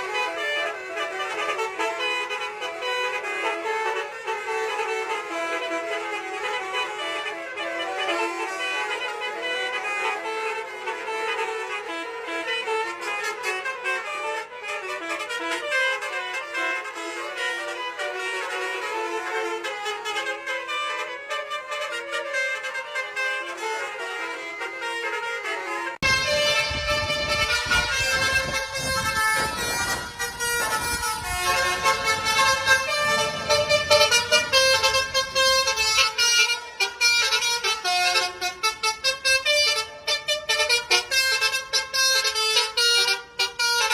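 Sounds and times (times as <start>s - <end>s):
bus musical horn melody: 0.0s - 43.9s
low engine rumble: 26.0s - 37.4s.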